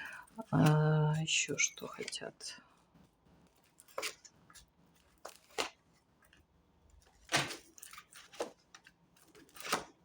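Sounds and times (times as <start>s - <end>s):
playing cards snapping and rustling: 3.6s - 6.4s, 7.0s - 10.0s.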